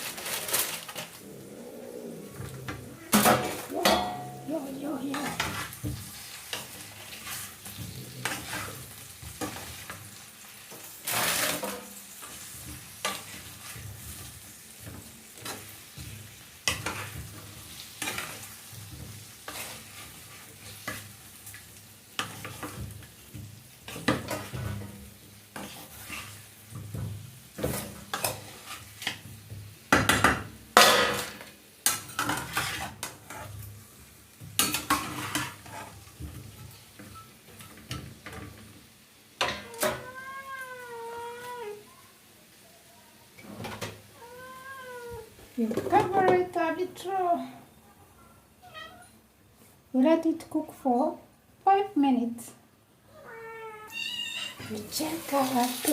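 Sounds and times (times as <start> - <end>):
onions sizzling in a pan: 0.0 - 55.9
utensil scraping and knocking pan: 31.9 - 33.6.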